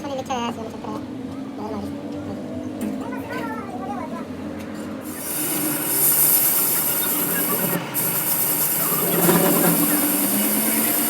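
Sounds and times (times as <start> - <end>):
tool rasping on steel: 5.1 - 11.0.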